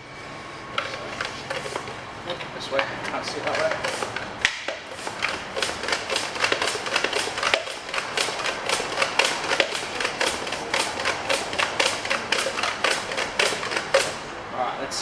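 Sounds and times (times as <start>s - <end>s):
bicycle pump strokes: 0.7s - 14.3s.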